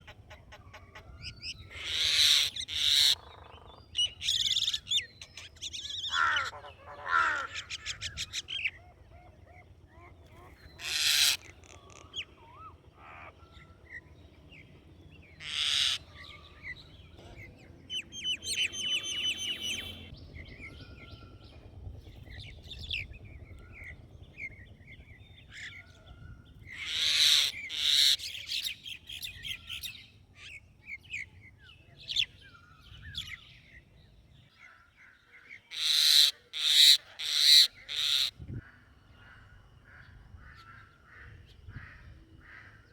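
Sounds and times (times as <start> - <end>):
birds squawking harshly: 0.0 - 8.8, 10.3 - 13.3, 15.4 - 16.4, 26.7 - 29.9, 35.7 - 38.3
rapid bird trill: 17.9 - 30.0, 35.6 - 38.9.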